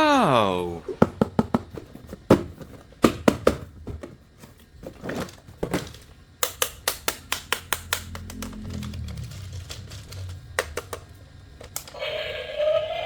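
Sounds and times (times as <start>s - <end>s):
plastic toy vehicles clicking: 5.1s - 12.0s.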